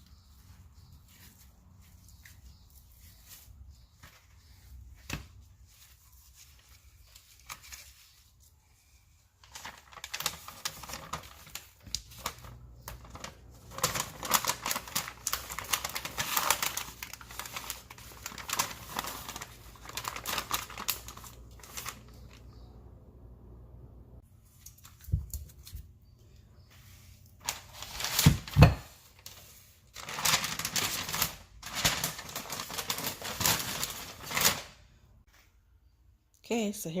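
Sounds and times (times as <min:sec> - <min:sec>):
freezer paper crinkling: 0:00.8 - 0:22.7, 0:27.3 - 0:34.8.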